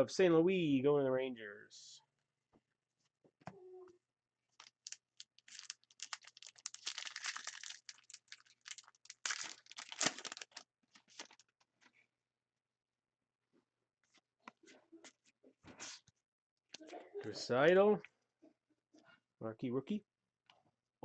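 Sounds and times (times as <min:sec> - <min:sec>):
wrapper tearing and crinkling: 0:04.6 - 0:11.4.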